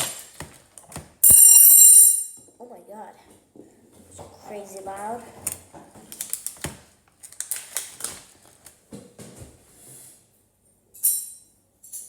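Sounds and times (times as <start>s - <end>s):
plastic seal crinkling: 5.4s - 8.8s.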